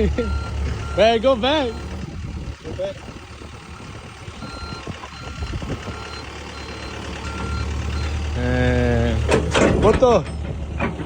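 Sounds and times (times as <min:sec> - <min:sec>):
vehicle reversing alarm beeps: 0:00.0 - 0:02.0, 0:03.1 - 0:09.2
engine hum: 0:00.0 - 0:11.0
low running rumble: 0:00.0 - 0:11.0.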